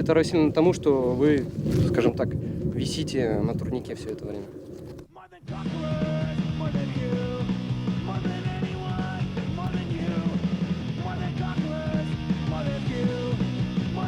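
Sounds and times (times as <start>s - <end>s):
rock music with distorted guitars: 5.5s - 14.0s.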